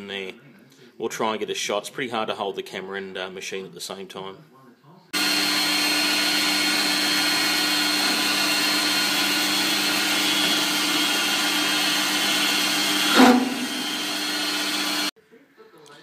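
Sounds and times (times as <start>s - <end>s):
metal lathe motor whine: 5.2s - 15.1s.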